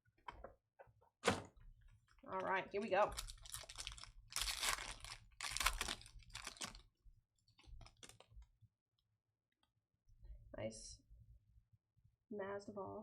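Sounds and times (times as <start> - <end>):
card wrappers rustling: 3.0 - 6.9, 7.8 - 8.3.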